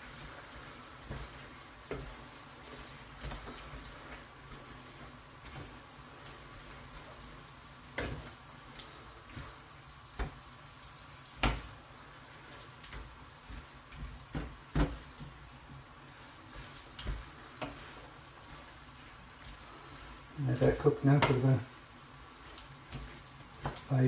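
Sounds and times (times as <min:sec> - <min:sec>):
food sizzling: 0:00.0 - 0:24.0
utensil scraping a wok: 0:11.5 - 0:24.0.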